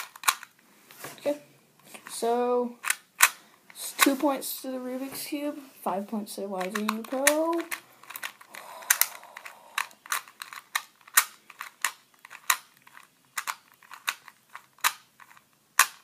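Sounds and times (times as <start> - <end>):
puzzle cube layers clicking: 0.0 - 0.6, 6.6 - 16.0.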